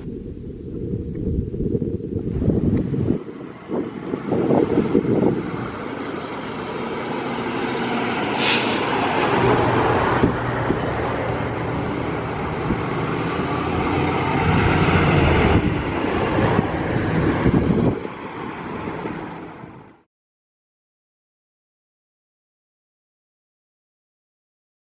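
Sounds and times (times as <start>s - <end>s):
diesel engine running: 0.0s - 20.0s
air brake hiss: 8.2s - 9.0s.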